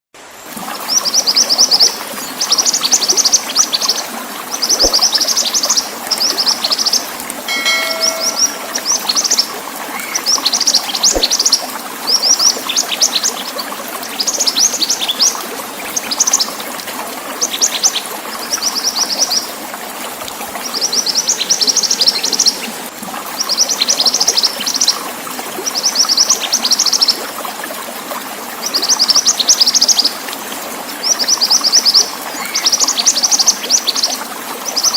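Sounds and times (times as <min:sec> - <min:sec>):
running water: 0:00.2 - 0:34.9
songbird chirping: 0:04.6 - 0:11.5, 0:32.4 - 0:33.9.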